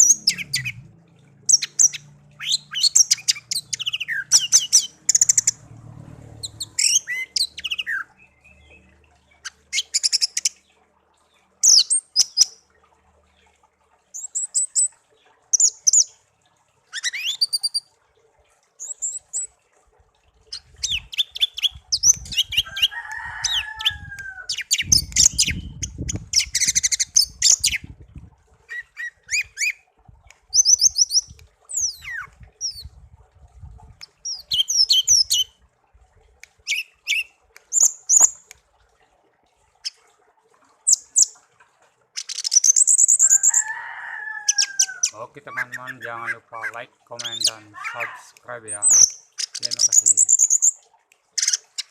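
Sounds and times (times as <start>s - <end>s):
songbird chirping and trilling: 0.0s - 0.8s, 1.5s - 5.6s, 6.3s - 12.6s, 20.5s - 27.9s, 30.5s - 32.9s, 34.0s - 35.6s, 42.2s - 43.9s, 44.5s - 50.8s
low rumbling noise: 5.0s - 6.8s.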